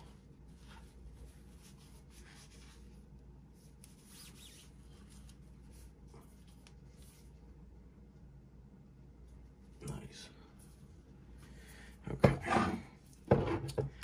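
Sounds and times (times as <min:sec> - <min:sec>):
cloth rubbing strokes: 0:00.0 - 0:07.7.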